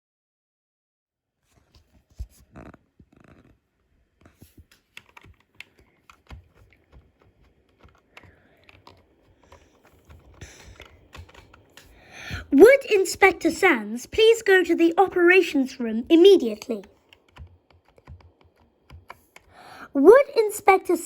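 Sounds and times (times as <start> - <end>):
faint clicks and knocks: 4.2 - 12.5, 16.8 - 19.6.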